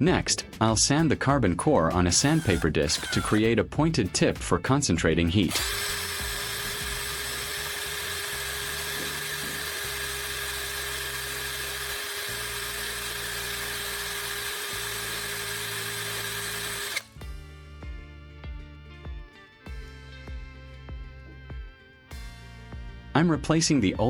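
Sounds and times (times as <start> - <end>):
power tool grinding whine: 2.1 - 3.6, 5.5 - 17.2
background music: 17.0 - 24.0.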